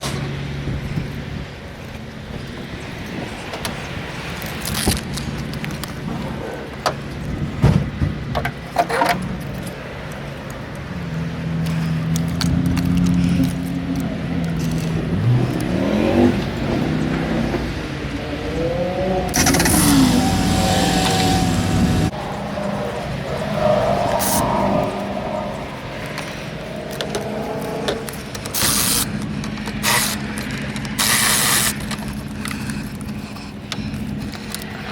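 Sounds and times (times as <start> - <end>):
rising and falling whines: 14.0 - 32.0.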